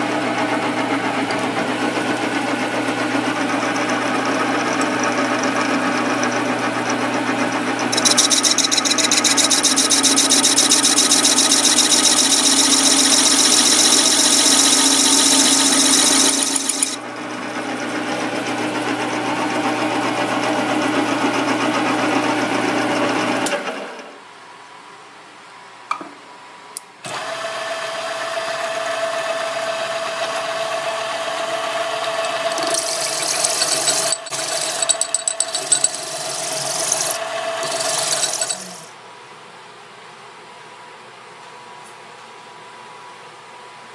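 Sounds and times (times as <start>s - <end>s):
lathe humming: 7.8s - 17.0s, 32.2s - 38.9s.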